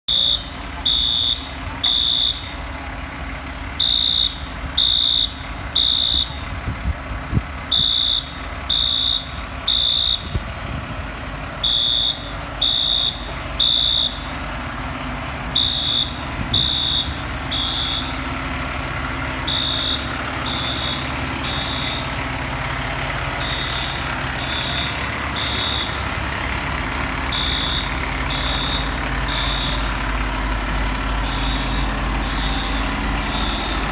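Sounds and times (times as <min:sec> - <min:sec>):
fire truck diesel engine idling: 0:00.0 - 0:33.9
fire alarm high beeps: 0:00.1 - 0:02.6, 0:03.8 - 0:06.5, 0:07.7 - 0:10.4, 0:11.6 - 0:14.3, 0:15.6 - 0:18.2, 0:19.5 - 0:22.2, 0:23.4 - 0:26.0, 0:27.3 - 0:29.9, 0:31.2 - 0:33.9.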